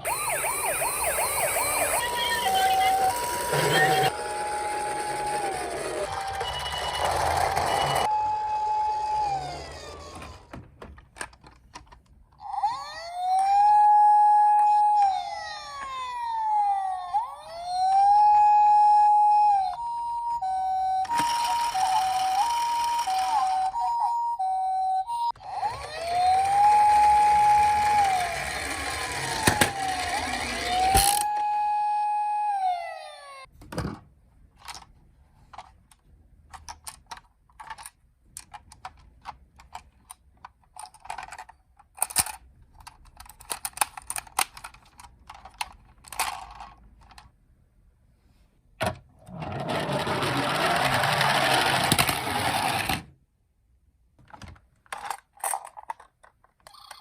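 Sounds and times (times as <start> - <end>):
toy siren wailing: 0.0 - 10.5, 12.4 - 33.5
toy car tyres rolling: 0.1 - 13.0, 21.0 - 23.8, 25.4 - 31.4, 49.2 - 53.1.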